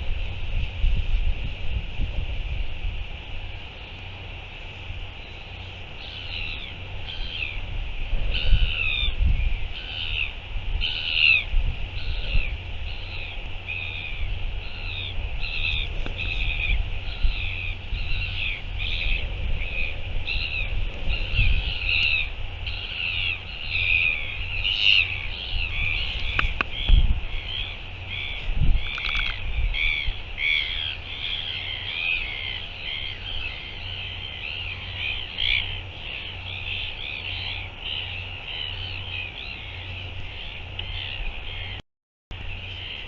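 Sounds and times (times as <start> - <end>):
wind buffeting microphone: 0.0 - 43.0
gulls calling: 3.1 - 43.0.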